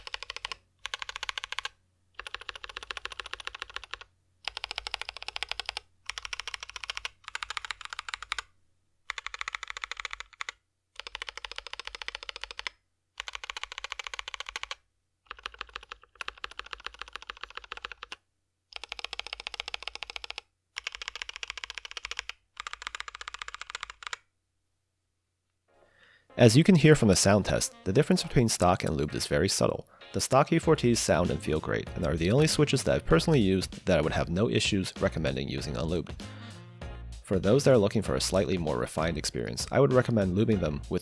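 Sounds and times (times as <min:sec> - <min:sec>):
mechanical keyboard keys clacking: 0:00.0 - 0:08.5, 0:09.1 - 0:18.2, 0:18.8 - 0:24.2.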